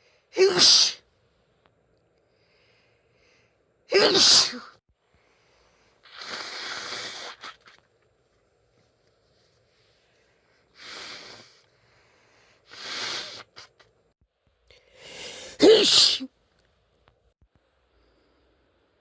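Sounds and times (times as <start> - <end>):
woman sneezing: 0.4 - 1.0, 3.9 - 4.8, 15.5 - 16.3
woman breathing hissingly: 2.3 - 7.8, 9.2 - 13.9, 14.8 - 16.3.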